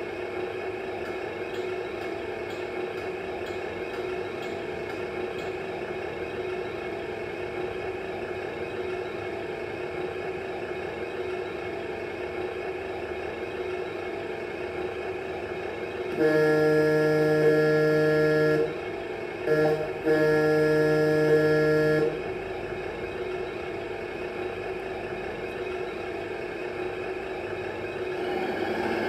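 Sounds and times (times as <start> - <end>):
simulated air horn: 16.1 - 18.7, 19.5 - 22.2
simulated diesel engine idling: 19.6 - 29.0.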